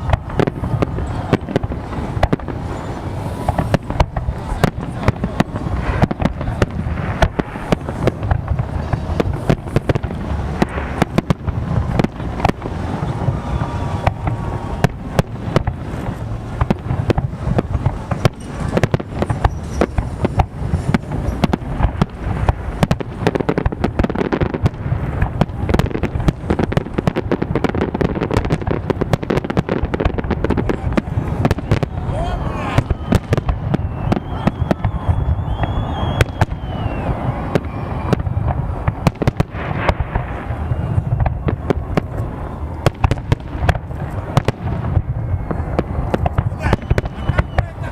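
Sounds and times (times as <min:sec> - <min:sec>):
continuous low rumble: 0:00.0 - 0:47.9
fireworks bangs and crackles: 0:00.0 - 0:47.9.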